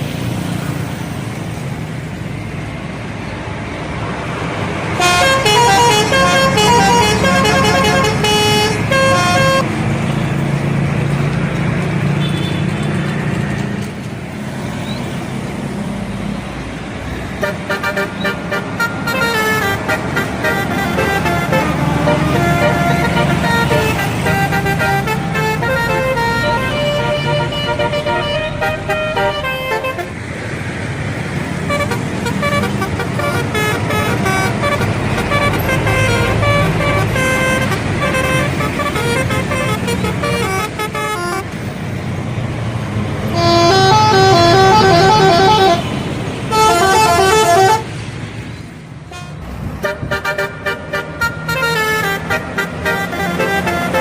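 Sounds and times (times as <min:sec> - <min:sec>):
bus engine rumble: 0:00.0 - 0:54.0
musical bus horn melodies: 0:04.9 - 0:09.7, 0:12.2 - 0:12.7, 0:17.4 - 0:30.2, 0:31.6 - 0:41.6, 0:43.2 - 0:48.0, 0:49.1 - 0:54.0.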